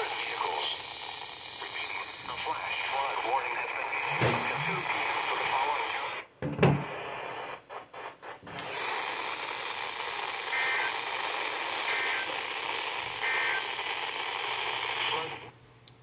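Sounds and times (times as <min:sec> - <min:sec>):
radio receiver hiss: 0:00.0 - 0:15.6
two-tone digital data bursts: 0:10.0 - 0:11.2, 0:11.8 - 0:15.4.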